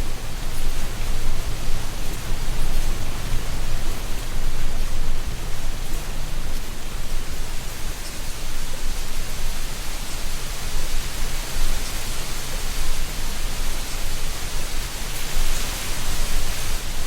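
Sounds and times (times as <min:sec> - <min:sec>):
wind through trees: 0:00.0 - 0:17.0.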